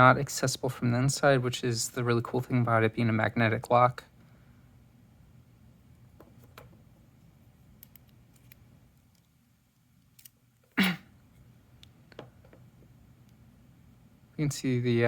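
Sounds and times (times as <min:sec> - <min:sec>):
small metal lock parts clicking: 0:10.0 - 0:10.4.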